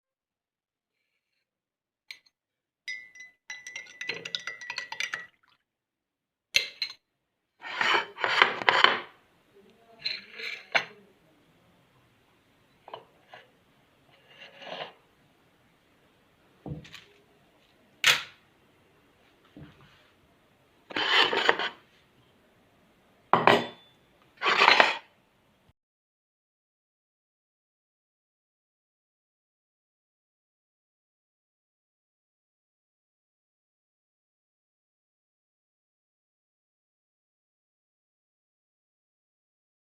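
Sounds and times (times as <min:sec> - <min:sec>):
kitchen bowls and utensils clinking: 0:02.9 - 0:05.6, 0:06.6 - 0:07.0, 0:10.0 - 0:11.0, 0:23.4 - 0:25.1.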